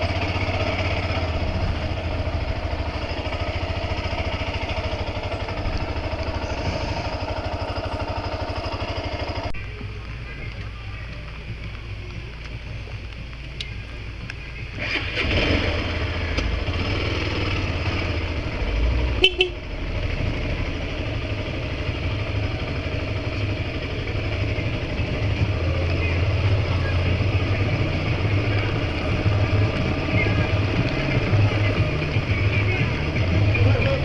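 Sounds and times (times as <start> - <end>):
vehicle engine and road noise: 0.0 - 34.0
short horn toot: 19.1 - 19.7.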